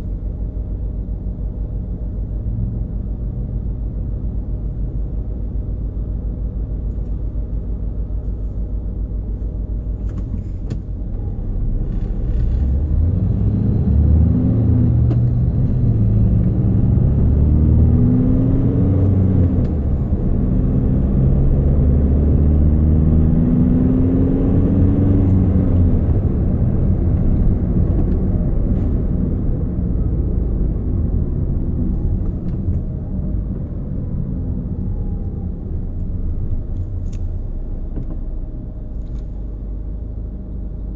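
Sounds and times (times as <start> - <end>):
car engine low rumble: 0.0 - 40.9
humming tone rising and falling: 12.0 - 36.6.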